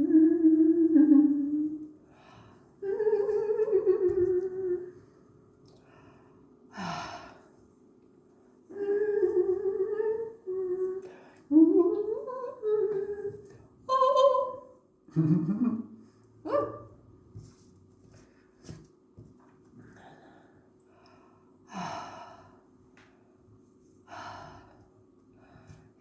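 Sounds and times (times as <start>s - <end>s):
woman humming: 0.0s - 2.0s, 2.8s - 5.0s, 8.7s - 16.9s.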